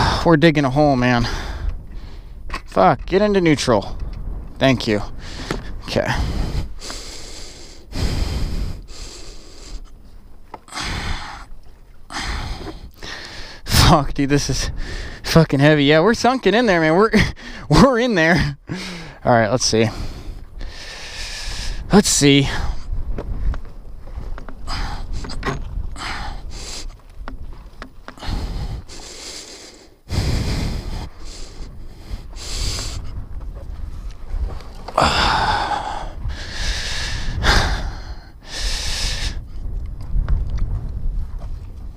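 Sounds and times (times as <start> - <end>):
heavy straining breaths: 5.2 - 10.0, 10.6 - 11.5, 12.1 - 13.7, 18.6 - 27.1, 28.0 - 33.2, 34.9 - 39.5.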